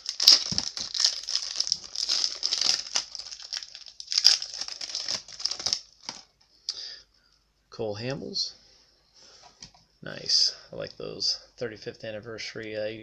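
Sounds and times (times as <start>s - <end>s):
foil wrapper crinkling: 0.0s - 6.3s.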